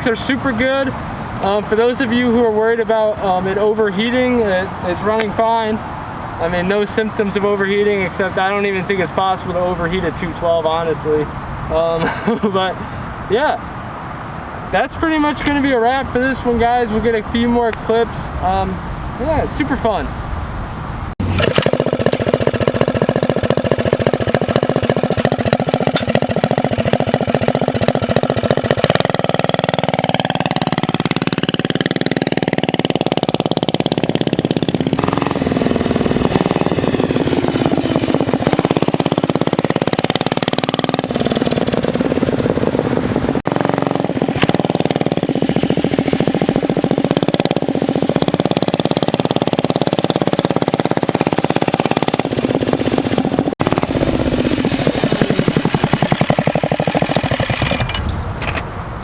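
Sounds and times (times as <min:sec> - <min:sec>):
mini bike engine running: 0:21.2 - 0:58.6.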